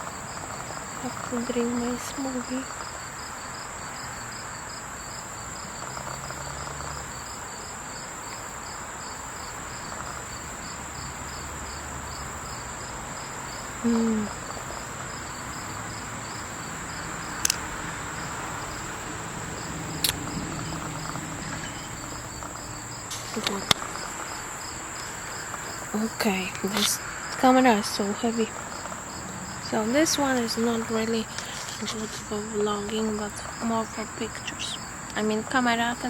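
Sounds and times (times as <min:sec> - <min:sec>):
insects chirping: 0:00.0 - 0:36.0
sharp clicks: 0:17.4 - 0:17.7, 0:20.0 - 0:20.4, 0:22.4 - 0:24.1.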